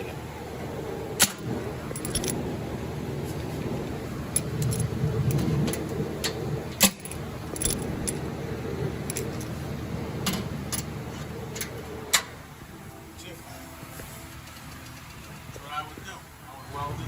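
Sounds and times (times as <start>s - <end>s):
low hum: 0.0s - 17.0s
metal parts clinking: 1.2s - 2.4s, 4.3s - 5.8s, 6.8s - 8.2s, 9.1s - 9.5s.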